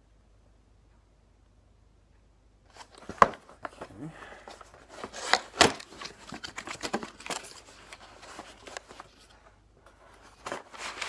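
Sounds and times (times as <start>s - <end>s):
packaging rustling and clicks: 2.7s - 11.0s.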